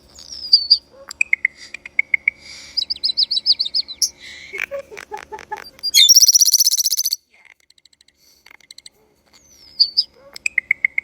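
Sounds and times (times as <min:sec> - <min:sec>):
bird calling: 0:00.3 - 0:07.2.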